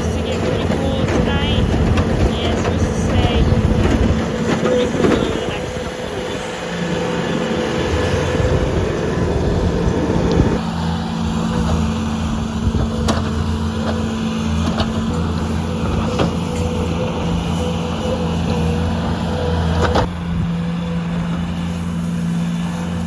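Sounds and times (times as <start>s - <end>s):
rushing noise: 0.0s - 10.7s
tractor engine running: 0.0s - 23.0s.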